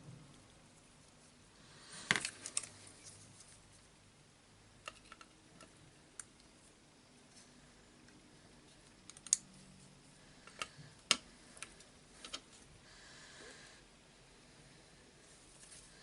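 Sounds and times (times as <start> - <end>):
plastic parts clicking and knocking: 4.8 - 5.8.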